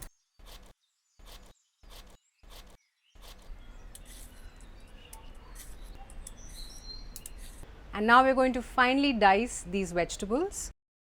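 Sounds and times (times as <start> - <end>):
peeler scraping beetroot: 0.0 - 7.6
bird chirps: 0.2 - 7.6.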